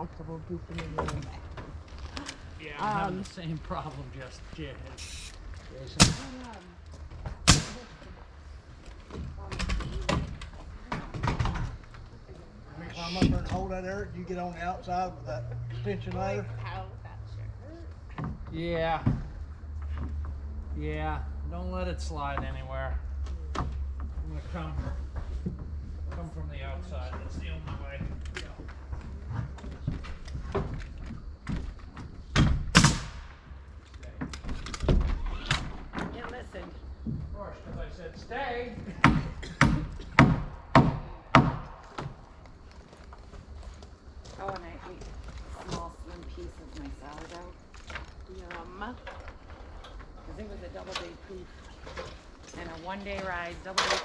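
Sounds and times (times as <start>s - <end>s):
sharp bangs on wooden framing: 39.0s - 42.2s.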